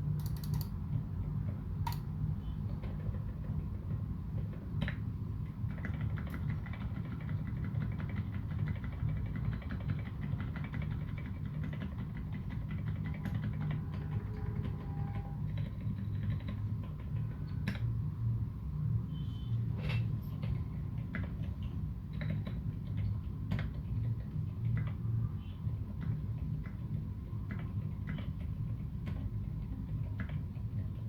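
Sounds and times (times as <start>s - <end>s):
fast typing on mechanical keyboard: 0.0s - 2.1s, 2.7s - 17.8s, 25.8s - 31.0s.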